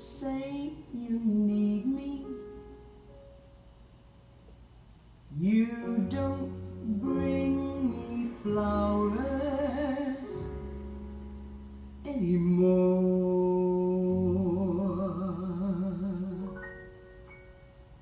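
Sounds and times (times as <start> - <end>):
person singing with vibrato: 0.0 - 2.6, 5.3 - 10.9, 12.0 - 17.0
ballad accompaniment: 5.3 - 18.0.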